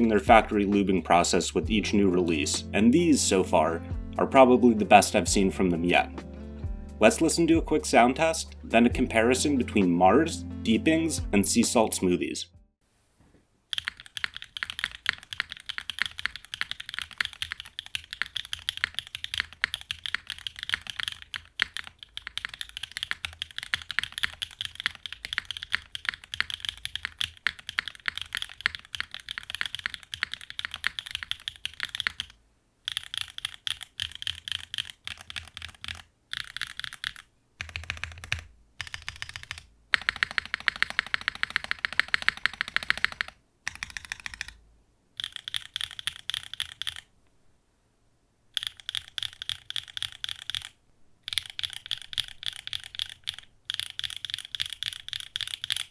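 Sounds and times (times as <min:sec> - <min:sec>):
fast mechanical keyboard typing: 0:13.7 - 0:44.6, 0:45.2 - 0:47.1, 0:48.6 - 0:55.9.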